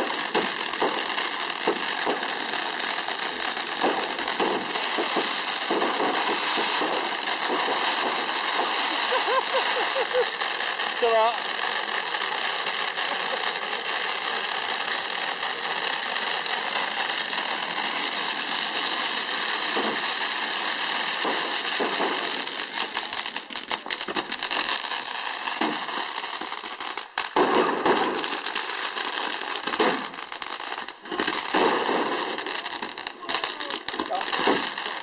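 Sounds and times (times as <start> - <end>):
fireworks crackling and popping: 0.0 - 35.0.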